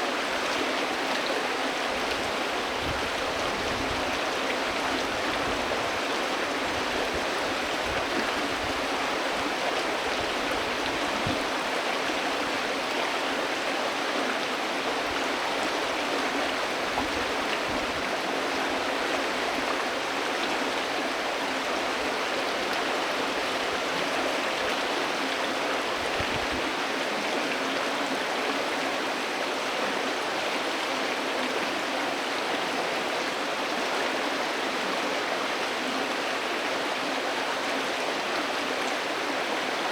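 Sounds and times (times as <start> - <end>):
river water rushing and babbling: 0.0 - 39.9.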